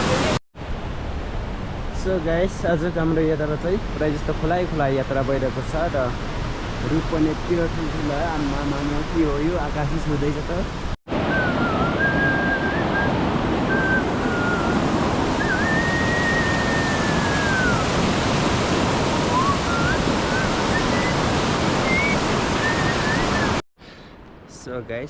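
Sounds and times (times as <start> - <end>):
rushing water: 0.0 - 23.6
thin wavering whistled tones: 11.3 - 17.9, 19.2 - 21.2, 21.8 - 23.6.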